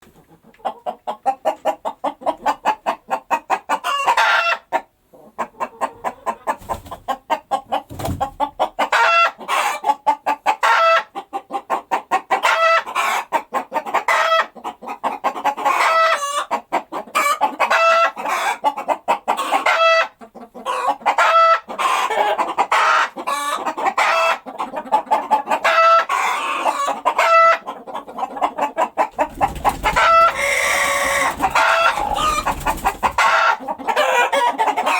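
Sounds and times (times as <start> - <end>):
hen cackling: 0.6 - 11.1, 12.1 - 34.9.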